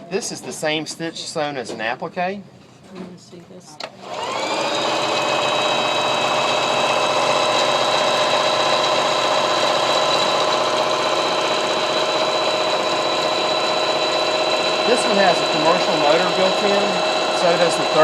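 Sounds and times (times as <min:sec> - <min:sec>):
sewing machine motor whirring: 0:03.9 - 0:18.0.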